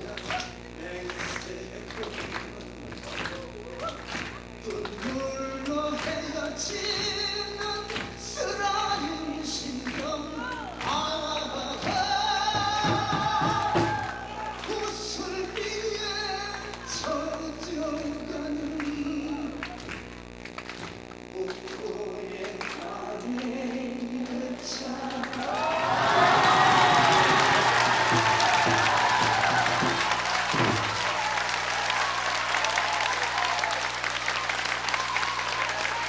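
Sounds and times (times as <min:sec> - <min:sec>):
man singing long held notes: 0:04.7 - 0:19.8, 0:21.3 - 0:26.5
sharp drum strikes: 0:27.0 - 0:31.1.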